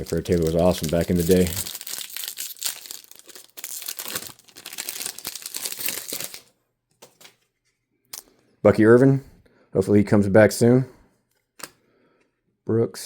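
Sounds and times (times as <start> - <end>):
foil wrapper crinkling and tearing: 0.0 - 6.5.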